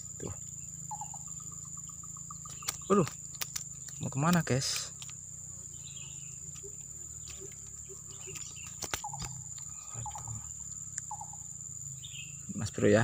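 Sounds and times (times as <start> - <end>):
insects trilling: 0.0 - 13.0
sharp clicks: 2.4 - 5.2, 7.2 - 11.2.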